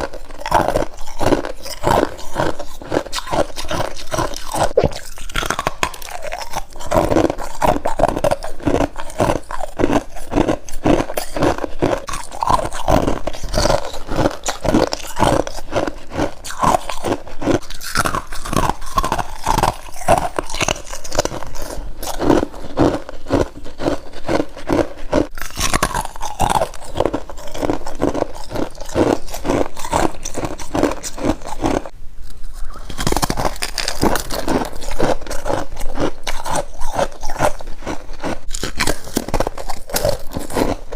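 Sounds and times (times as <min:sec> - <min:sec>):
crisp crunching of frost: 0:08.2 - 0:40.9.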